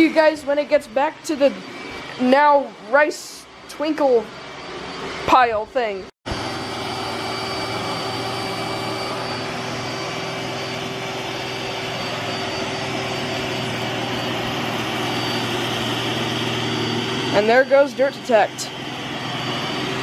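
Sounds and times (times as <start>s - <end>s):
robot vacuum whirring: 6.3s - 20.0s.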